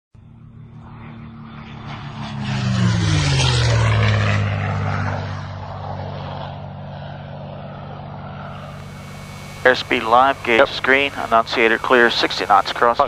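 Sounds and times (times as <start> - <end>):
turboprop engine drone: 0.2 - 13.0.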